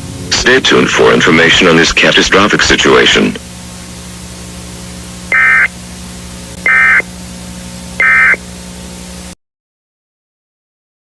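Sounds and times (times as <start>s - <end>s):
low hum: 0.0s - 9.4s
digital data tone bursts: 5.3s - 5.8s, 6.6s - 7.1s, 8.0s - 8.4s.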